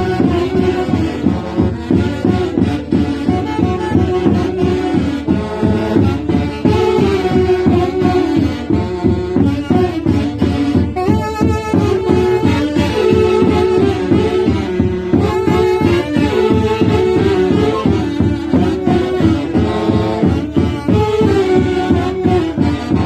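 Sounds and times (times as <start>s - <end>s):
live band playing: 0.0s - 23.0s.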